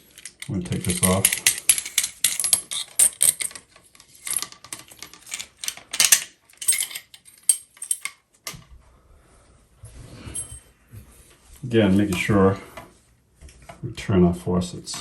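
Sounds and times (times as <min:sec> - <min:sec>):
faucet parts clicking and rattling: 0:00.0 - 0:08.6.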